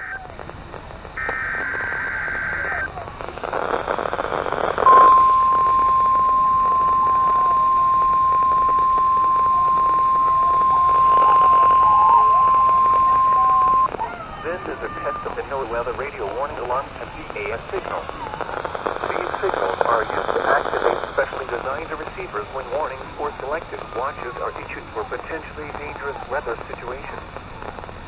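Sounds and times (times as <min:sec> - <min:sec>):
radio hiss: 0:00.0 - 0:28.0
steady warning alarm tone: 0:01.1 - 0:27.7
digital header data burst: 0:01.2 - 0:13.9.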